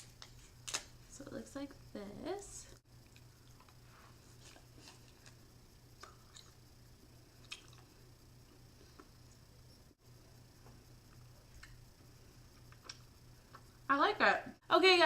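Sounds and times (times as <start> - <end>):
low steady hum: 0.0 - 15.0
soft chewing of taffy: 2.9 - 9.5
mouth clicks and smacks: 6.0 - 6.6, 7.4 - 7.9.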